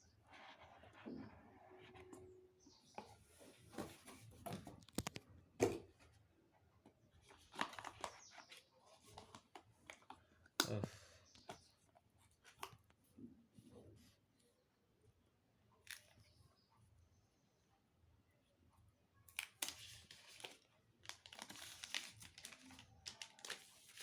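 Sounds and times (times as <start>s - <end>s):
paper and plastic rustling: 2.9s - 5.8s, 19.4s - 24.0s.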